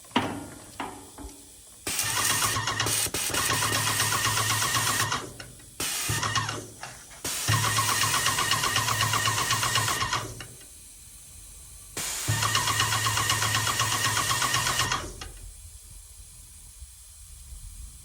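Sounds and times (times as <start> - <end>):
paint sprayer pump ticking: 0.8 - 10.8, 12.0 - 15.4.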